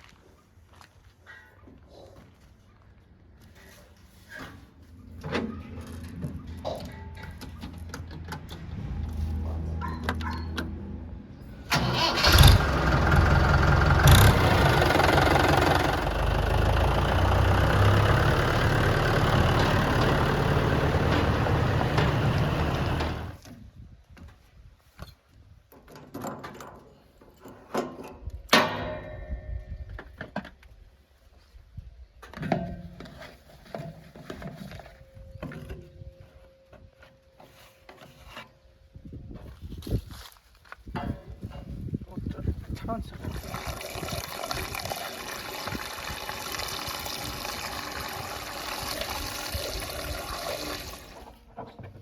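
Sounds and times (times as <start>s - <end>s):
diesel engine revving: 8.5s - 23.4s.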